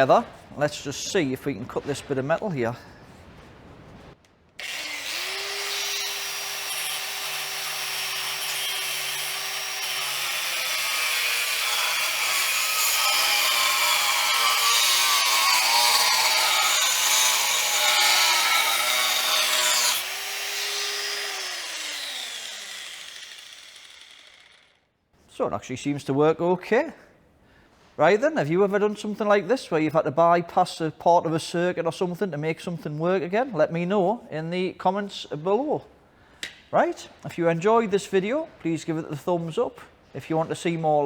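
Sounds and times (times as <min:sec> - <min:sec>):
angle grinder whine: 0:13.2 - 0:24.7.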